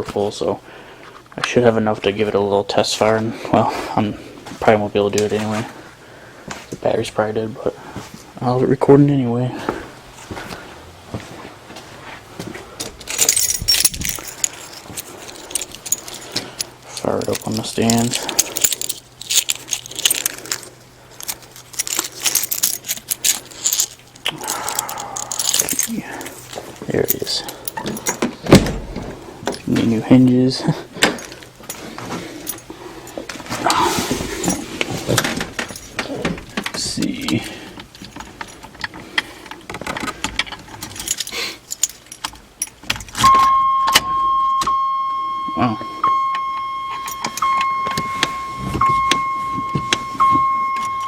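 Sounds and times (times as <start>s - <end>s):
car keys jangling: 12.8s - 30.0s, 31.0s - 33.3s, 34.4s - 44.0s, 46.1s - 51.0s
metallic jingling and clicking: 12.8s - 30.1s, 31.0s - 33.4s, 34.4s - 43.3s, 46.9s - 48.5s.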